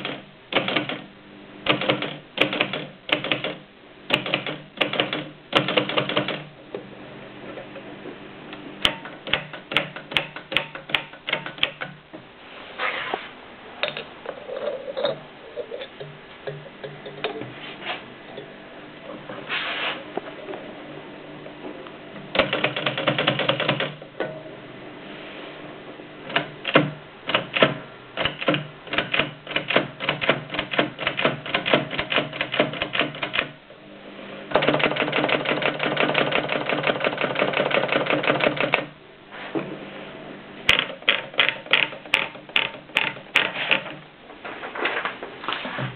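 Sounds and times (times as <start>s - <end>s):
typewriter typing: 0.0s - 1.0s, 1.7s - 6.5s, 22.4s - 24.0s, 26.3s - 33.5s, 34.6s - 38.9s.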